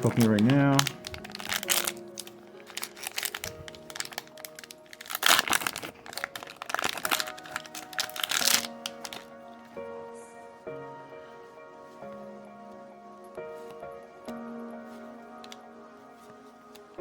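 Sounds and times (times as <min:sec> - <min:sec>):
card pack wrapper crinkling: 0:00.0 - 0:09.3
background music: 0:00.0 - 0:17.0.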